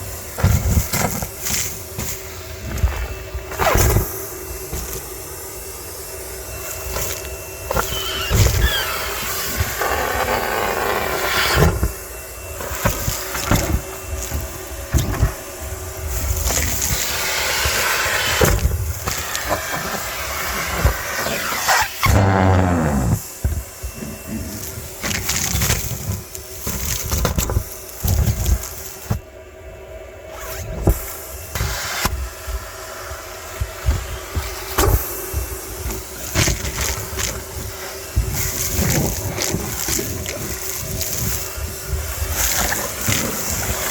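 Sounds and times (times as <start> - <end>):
knocks and clatters in hose: 0.0 - 5.1, 12.6 - 29.2, 33.6 - 43.9
vacuum cleaner motor hum: 0.0 - 43.9
vacuum rushing suction: 13.5 - 25.3.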